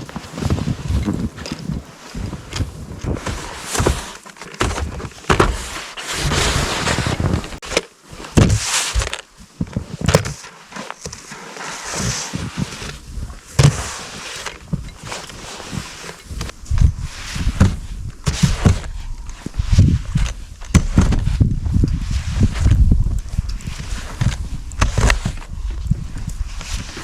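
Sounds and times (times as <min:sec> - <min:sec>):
microphone handling rumble: 0:00.0 - 0:07.6, 0:14.6 - 0:27.0
footsteps crunching in snow: 0:00.0 - 0:27.0.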